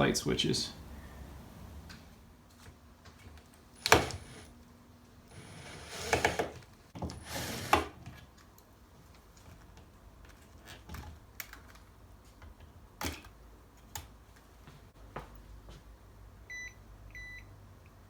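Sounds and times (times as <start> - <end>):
cover plate scraping and rattling: 5.3 - 8.2.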